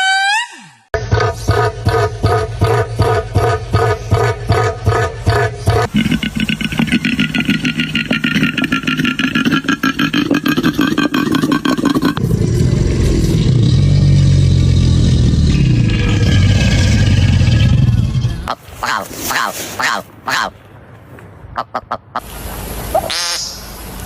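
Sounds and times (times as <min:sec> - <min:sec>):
steady low drone: 0:12.1 - 0:18.5.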